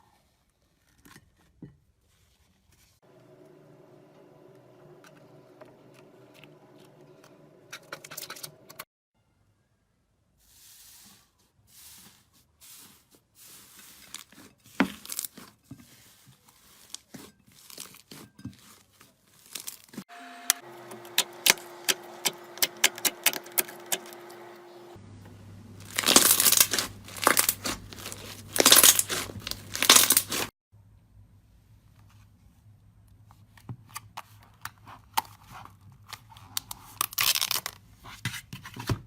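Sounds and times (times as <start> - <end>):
slime crackling and popping: 25.8 - 30.5.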